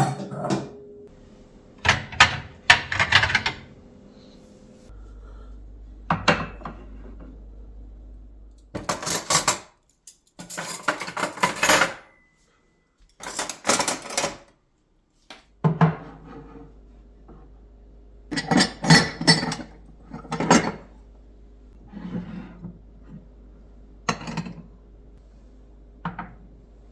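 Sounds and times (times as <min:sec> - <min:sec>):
dishes and cutlery clinking: 0:00.0 - 0:00.8, 0:10.4 - 0:12.2, 0:18.3 - 0:20.9.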